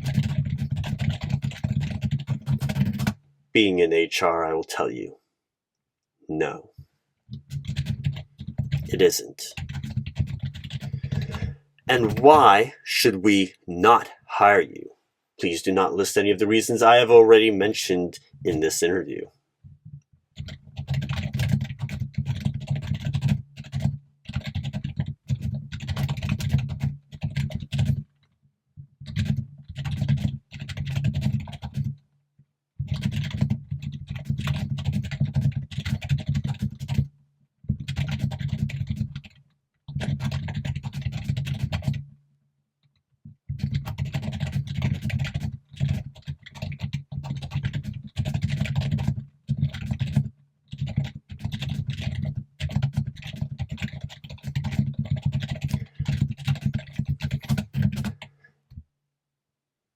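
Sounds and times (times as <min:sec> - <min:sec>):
fast typing on computer keyboard: 0:00.0 - 0:03.2, 0:07.3 - 0:12.7, 0:20.4 - 0:28.2, 0:29.0 - 0:32.0, 0:32.8 - 0:42.1, 0:43.5 - 0:58.3.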